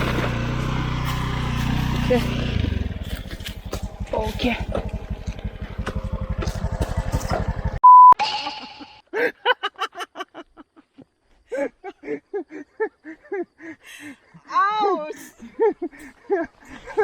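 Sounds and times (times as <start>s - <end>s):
scooter engine idling: 0.0s - 7.8s
censor beep: 7.8s - 8.2s.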